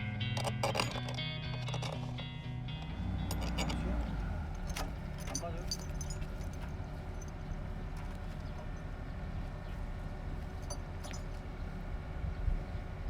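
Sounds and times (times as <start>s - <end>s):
machinery engine rumble: 0.0s - 13.0s
light knocks and clinks: 0.4s - 2.1s, 3.2s - 9.0s, 10.4s - 11.5s.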